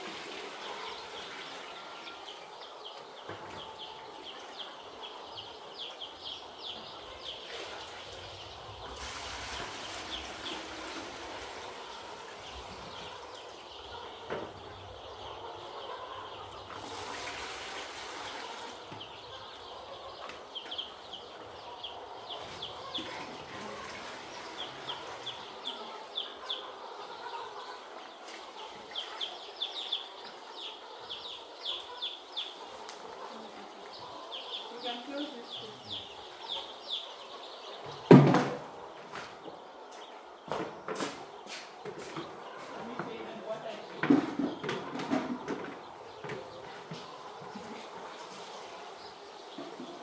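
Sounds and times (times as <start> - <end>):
chicks peeping: 0.0 - 50.0.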